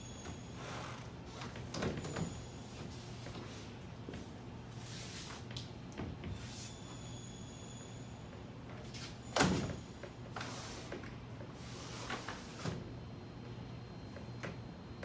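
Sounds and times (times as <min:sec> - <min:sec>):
window sash sliding and rubbing: 0:11.6 - 0:12.8.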